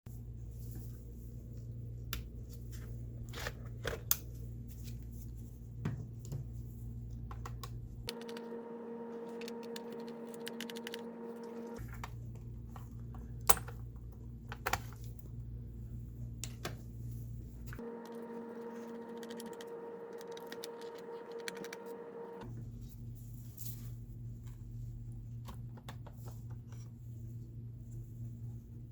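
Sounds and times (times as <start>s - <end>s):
low electrical hum: 0.1s - 28.9s
high even buzz: 8.1s - 11.8s, 17.8s - 22.4s.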